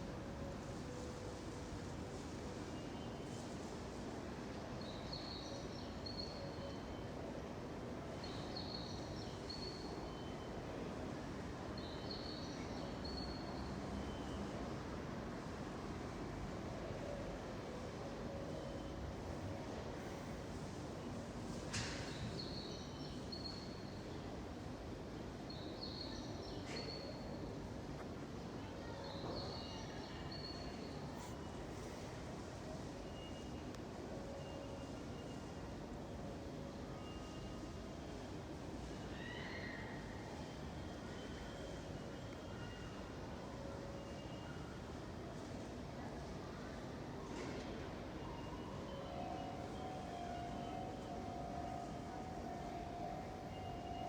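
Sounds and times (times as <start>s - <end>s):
outdoor background noise: 0.0s - 54.0s
steady background noise: 0.0s - 54.0s.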